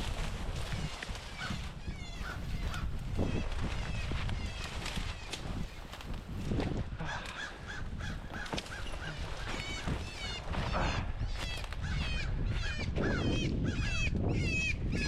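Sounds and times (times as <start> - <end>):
rustling and handling noise: 0.0 - 10.8.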